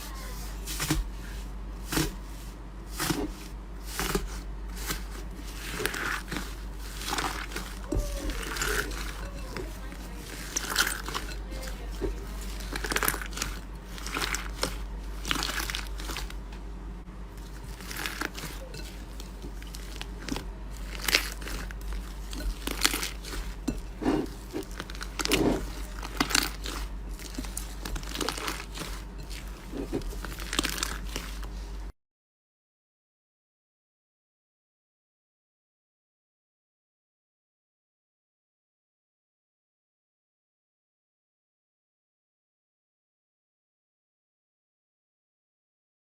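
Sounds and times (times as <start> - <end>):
low steady hum: 0.0 - 31.9
slime crackling crunches: 2.9 - 16.5, 17.3 - 31.6.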